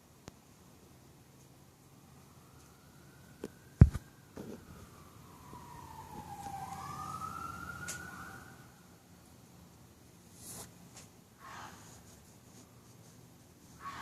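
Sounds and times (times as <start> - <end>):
distant siren wailing: 1.6 - 9.2.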